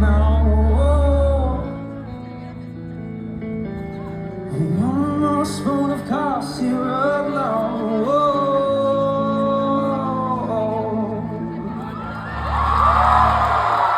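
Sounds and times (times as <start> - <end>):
man singing live: 0.0 - 2.9, 4.1 - 12.2.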